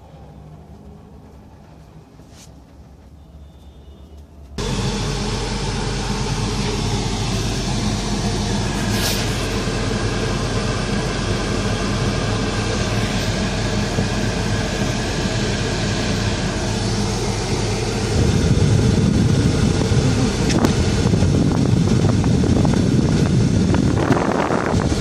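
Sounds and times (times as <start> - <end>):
car engine humming: 4.6 - 25.0.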